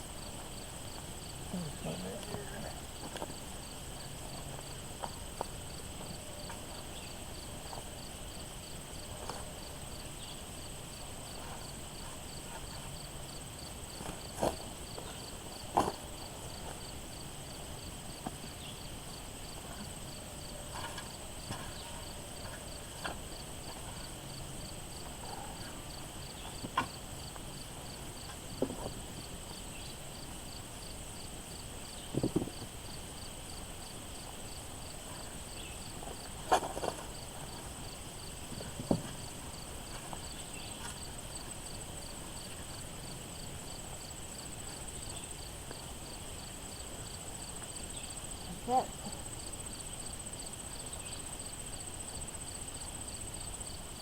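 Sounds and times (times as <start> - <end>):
insects trilling: 0.0 - 54.0
digging thuds in soil: 15.6 - 16.7.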